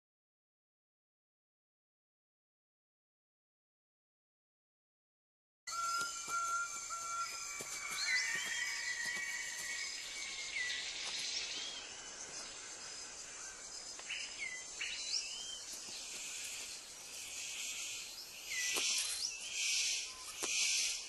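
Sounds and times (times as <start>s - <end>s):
bird whistled calls: 5.7s - 11.9s
steady high hiss: 6.0s - 21.0s
loud raspy hiss: 15.9s - 21.0s.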